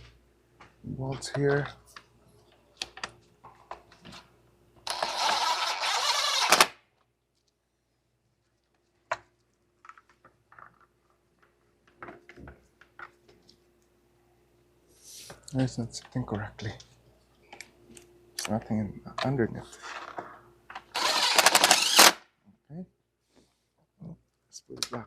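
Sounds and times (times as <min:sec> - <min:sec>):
power tool driving a bolt: 0:04.9 - 0:06.8, 0:20.9 - 0:22.2.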